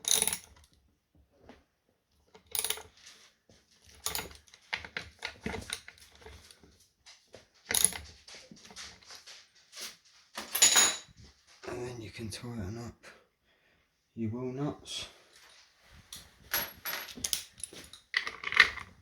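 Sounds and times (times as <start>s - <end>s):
metal tools clinking: 0.0s - 0.6s, 2.4s - 3.0s, 3.9s - 6.5s, 7.7s - 9.2s, 10.4s - 11.2s, 16.1s - 19.0s.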